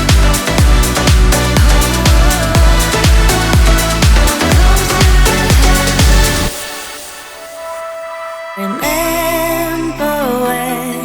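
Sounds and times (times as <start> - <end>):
pop song with sung vocal: 0.0 - 11.0.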